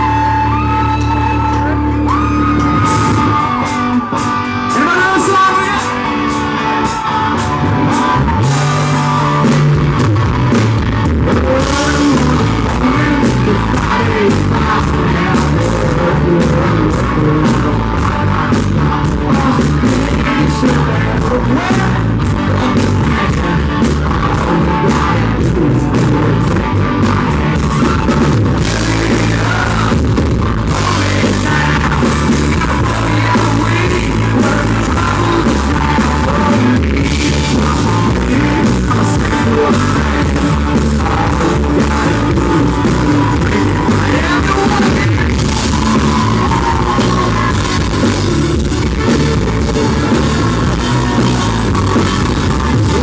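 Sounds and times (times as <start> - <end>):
country rock band playing live: 0.0 - 53.0
drums: 0.0 - 53.0
lead vocals: 0.0 - 53.0.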